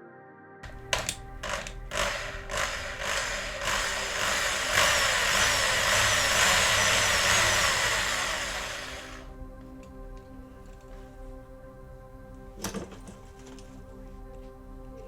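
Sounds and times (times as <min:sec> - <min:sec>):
sharp clicks: 0:00.6 - 0:06.5
small electric drill whining: 0:00.6 - 0:09.3.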